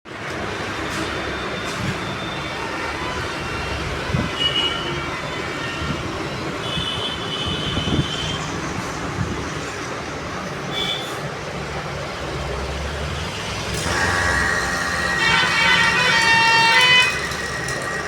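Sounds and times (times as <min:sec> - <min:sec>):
mechanical running noise: 0:13.6 - 0:18.0
high-pitched squeals: 0:13.7 - 0:18.0.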